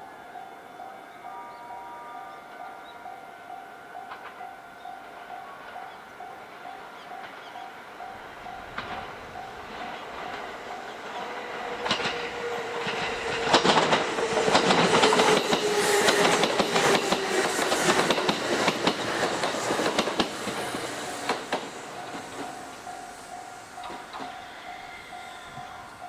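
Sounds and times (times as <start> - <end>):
train wheels clacking: 4.0 - 26.0
train motor whine: 8.8 - 26.0.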